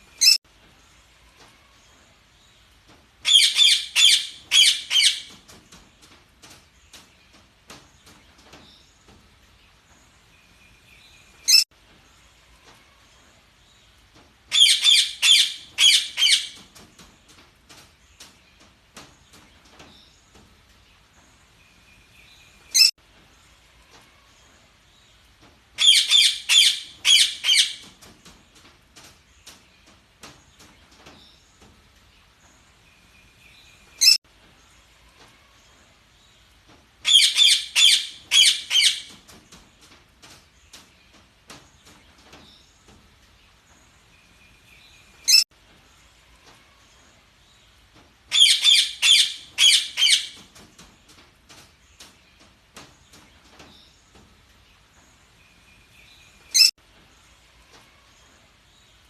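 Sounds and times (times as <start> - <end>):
budgerigars chirping: 48.3 - 50.3.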